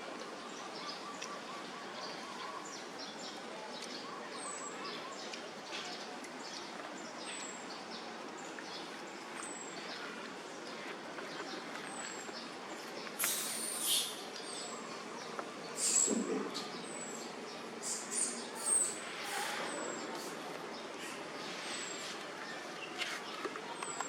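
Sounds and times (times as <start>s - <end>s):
steady hiss: 13.1s - 14.6s.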